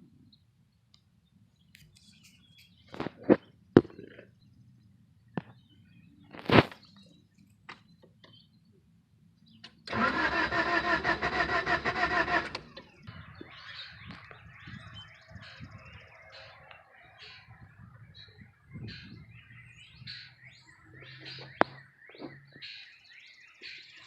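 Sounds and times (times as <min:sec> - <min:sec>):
starter cranking engine: 0:09.8 - 0:13.0.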